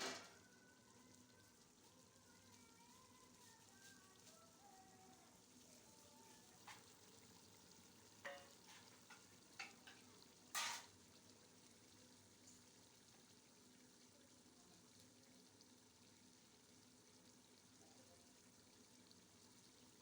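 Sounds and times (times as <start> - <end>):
food frying in a pot: 0.0 - 20.0
spoon knocking and scraping pot: 6.6 - 6.9, 8.2 - 10.9.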